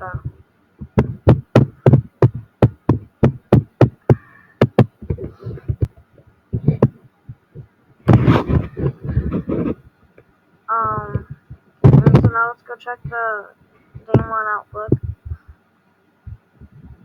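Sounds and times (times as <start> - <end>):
soft taps: 0.8 - 6.0, 6.6 - 9.8, 10.9 - 12.4, 14.0 - 15.5.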